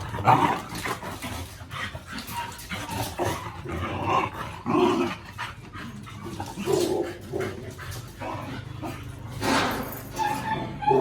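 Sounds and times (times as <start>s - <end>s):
dogs barking: 5.2s - 11.0s.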